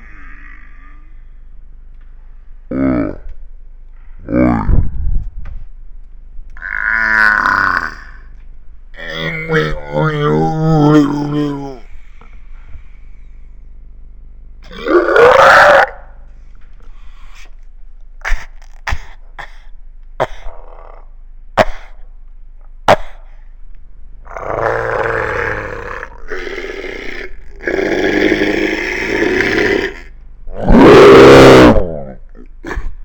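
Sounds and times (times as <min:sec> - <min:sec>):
person imitating cow calls: 0:00.0 - 0:01.2, 0:06.6 - 0:08.3, 0:09.0 - 0:11.9
low grunting noises: 0:00.0 - 0:01.4, 0:02.7 - 0:03.4, 0:04.2 - 0:05.0, 0:06.6 - 0:08.3, 0:09.0 - 0:12.0, 0:14.6 - 0:16.2, 0:18.2 - 0:21.9, 0:24.3 - 0:33.0.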